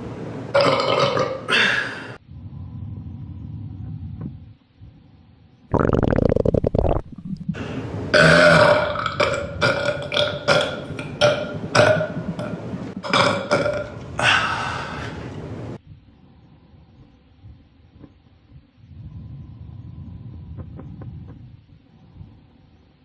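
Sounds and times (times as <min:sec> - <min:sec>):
person burping: 0:00.6 - 0:02.1, 0:05.8 - 0:07.0, 0:08.1 - 0:15.2.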